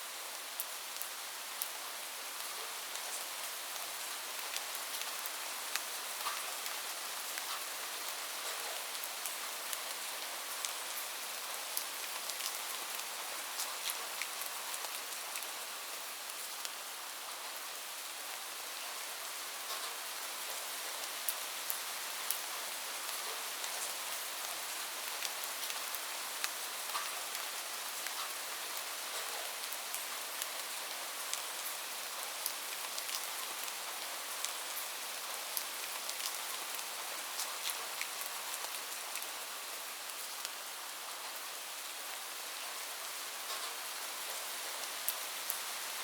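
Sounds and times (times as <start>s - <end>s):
light rain falling: 0.0s - 46.0s.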